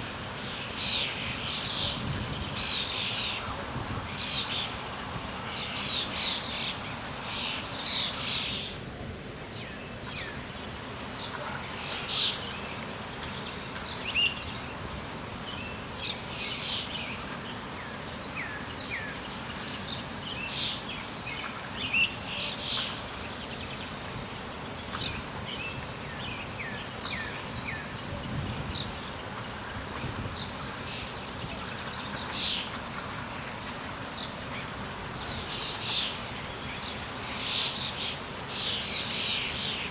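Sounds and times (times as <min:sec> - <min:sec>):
steady background hiss: 0:00.0 - 0:39.9
small birds chirping: 0:15.5 - 0:39.9.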